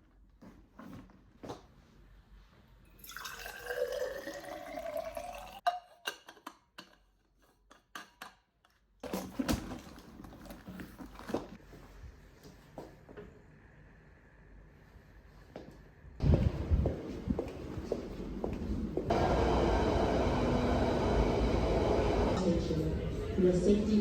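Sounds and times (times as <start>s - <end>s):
liquid pouring into a glass: 3.0s - 5.6s.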